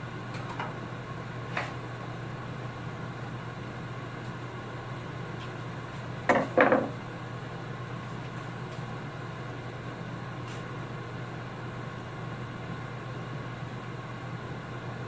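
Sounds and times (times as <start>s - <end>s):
knocks: 6.3s - 6.9s.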